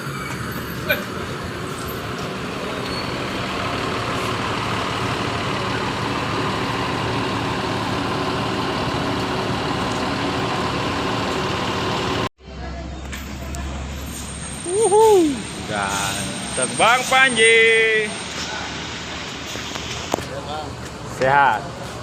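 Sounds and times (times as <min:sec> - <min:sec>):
bus diesel engine running: 0:00.0 - 0:22.0.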